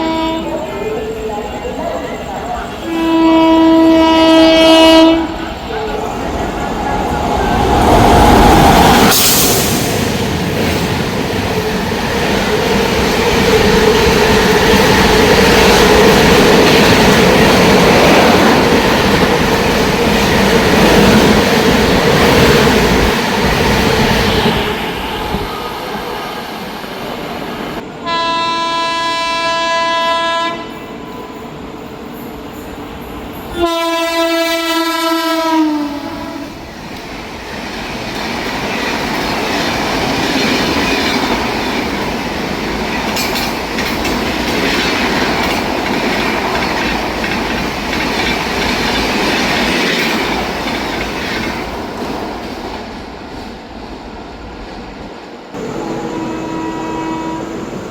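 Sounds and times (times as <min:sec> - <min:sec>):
locomotive horn blasts: 0:00.0 - 0:00.6, 0:02.9 - 0:05.3, 0:28.0 - 0:30.8, 0:33.6 - 0:36.5, 0:55.6 - 0:57.8
train wheels rumbling on rails: 0:00.0 - 0:28.0, 0:30.7 - 0:57.9.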